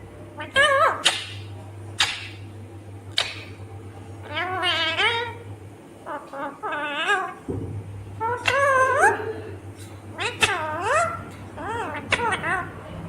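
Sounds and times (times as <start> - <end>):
parrot wavering calls: 0.4 - 2.4, 4.2 - 5.4, 6.0 - 7.5, 8.2 - 9.4, 10.1 - 12.8.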